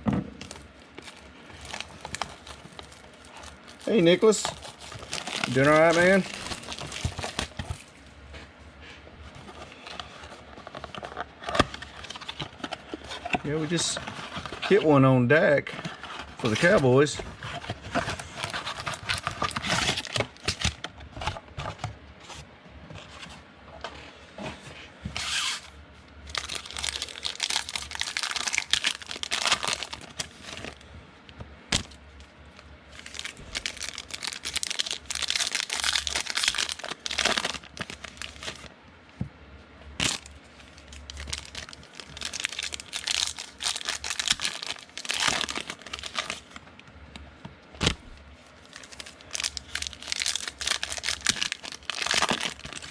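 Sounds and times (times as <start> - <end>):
card pack wrappers ripping: 0.4 - 7.8, 16.4 - 20.8, 26.3 - 30.8, 33.0 - 38.7, 40.0 - 46.6, 48.6 - 52.9.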